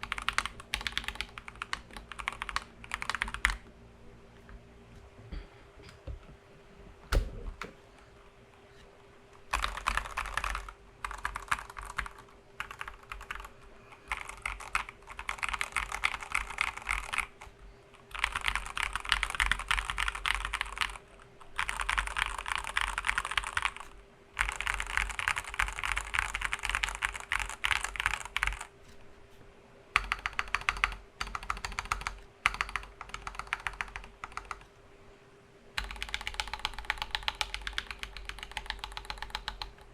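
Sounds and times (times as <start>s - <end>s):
mechanical keyboard typing: 0.0s - 3.7s, 9.5s - 17.5s, 18.1s - 28.7s, 30.0s - 34.7s, 35.8s - 39.9s.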